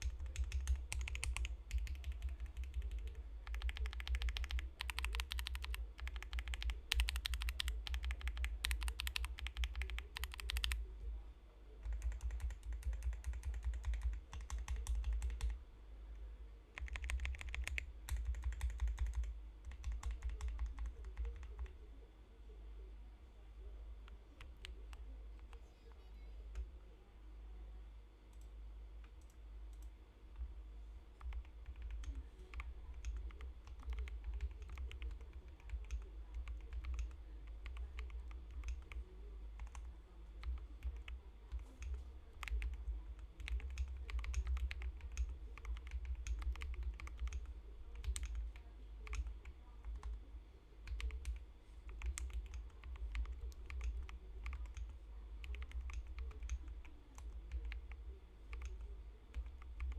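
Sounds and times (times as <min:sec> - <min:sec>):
mechanical keyboard typing: 0:00.0 - 0:10.9, 0:11.8 - 0:15.6, 0:16.8 - 0:21.8, 0:31.2 - 0:50.2, 0:50.8 - 0:59.9.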